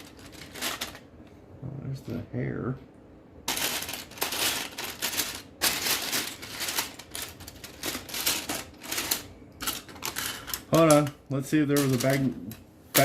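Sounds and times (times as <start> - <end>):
plastic bricks rattling and clicking: 3.5 - 11.1, 11.8 - 13.0.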